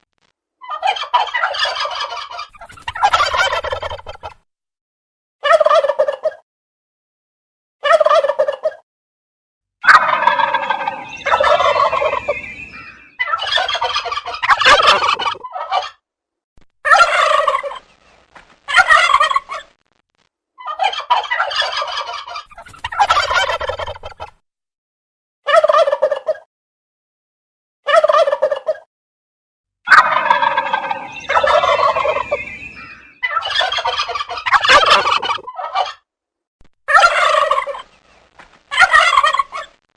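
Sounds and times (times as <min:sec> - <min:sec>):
turkey gobbling: 0:00.6 - 0:04.4, 0:05.4 - 0:06.4, 0:07.8 - 0:08.8, 0:09.8 - 0:16.0, 0:16.9 - 0:17.8, 0:18.7 - 0:19.7, 0:20.6 - 0:24.3, 0:25.5 - 0:26.5, 0:27.9 - 0:28.9, 0:29.9 - 0:36.0, 0:36.9 - 0:37.9, 0:38.7 - 0:39.8.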